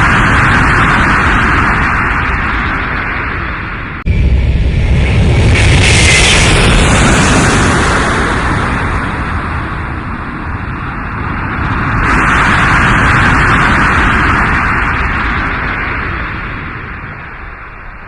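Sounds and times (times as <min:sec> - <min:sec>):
fighter jet roaring overhead: 0:00.0 - 0:18.0.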